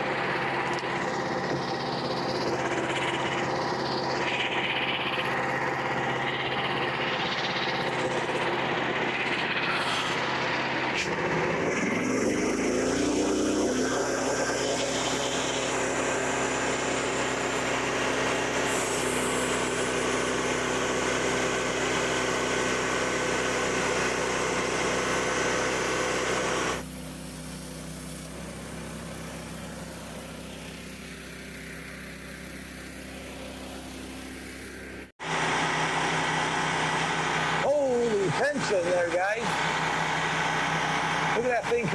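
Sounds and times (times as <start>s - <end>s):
small engine running: 0.0s - 41.9s
bandsaw blade: 9.3s - 26.9s.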